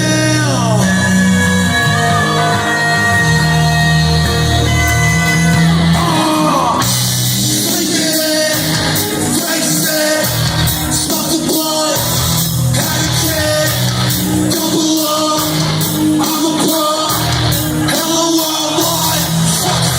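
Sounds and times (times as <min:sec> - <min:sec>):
live rock band music: 0:00.0 - 0:19.9
voices singing and shouting: 0:00.0 - 0:19.9
steady drum beat: 0:06.0 - 0:19.9.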